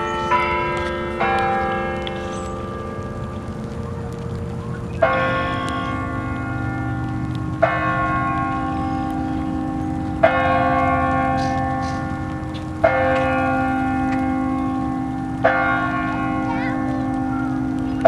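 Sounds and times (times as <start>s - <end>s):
tower bell ringing: 0.0s - 18.0s.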